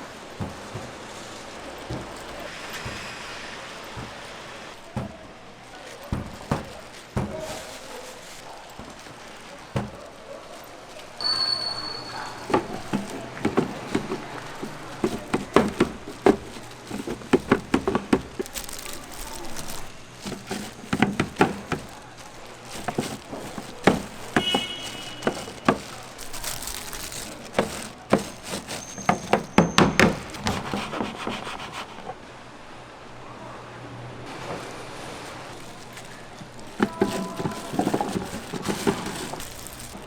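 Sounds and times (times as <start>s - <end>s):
kitchen knocking and clattering: 12.0s - 32.1s, 35.5s - 40.0s.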